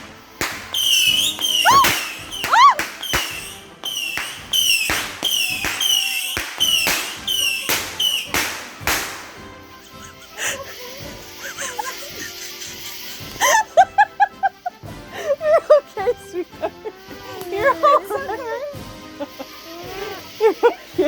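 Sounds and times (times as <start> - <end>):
firework firing rapid shots: 0.0 - 10.0
firework whistles: 0.0 - 13.6.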